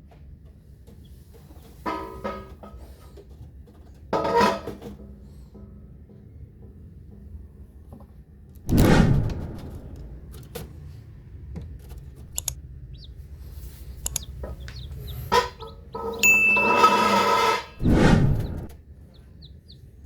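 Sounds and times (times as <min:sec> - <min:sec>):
chickens clucking: 0:12.3 - 0:17.7, 0:18.3 - 0:20.0.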